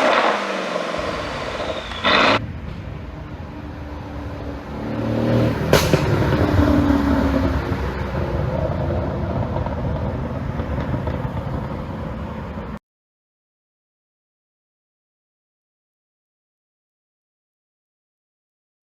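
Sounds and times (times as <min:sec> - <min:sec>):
exhaust pop: 0:00.0 - 0:03.5, 0:05.4 - 0:12.2
car engine revving: 0:00.0 - 0:12.8.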